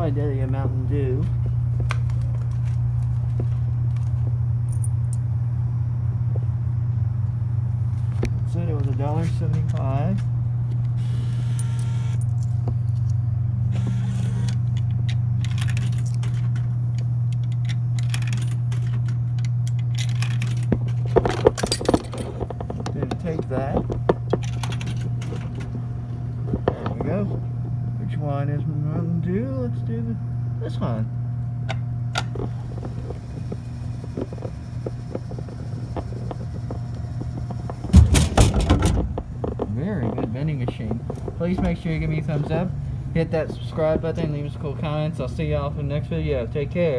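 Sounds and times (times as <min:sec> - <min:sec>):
vending machine electrical hum: 0:00.0 - 0:46.9
coins clinking into machine: 0:13.8 - 0:16.8, 0:17.4 - 0:22.3, 0:24.4 - 0:25.7
small clicks and rattles: 0:14.5 - 0:25.8.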